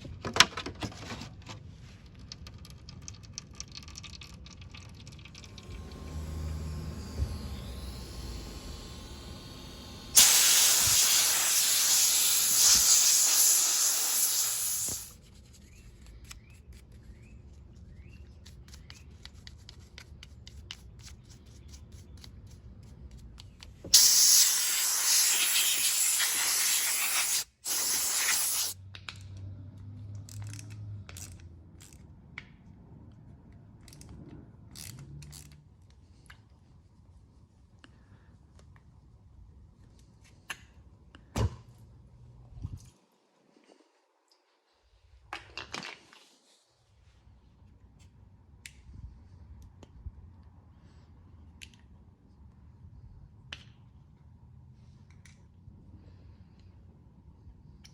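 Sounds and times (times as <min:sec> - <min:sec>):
pressurized spray hissing: 0:07.6 - 0:15.1, 0:23.9 - 0:28.8.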